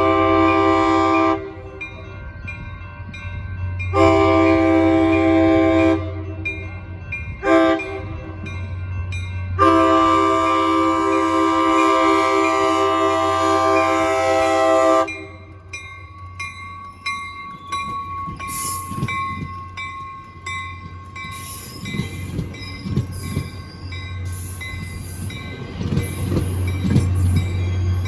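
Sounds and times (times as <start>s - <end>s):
diesel locomotive humming: 0.0s - 28.0s
train bell ringing: 0.0s - 28.0s
train wheels rumbling: 0.0s - 28.0s
high squeal: 21.2s - 28.0s.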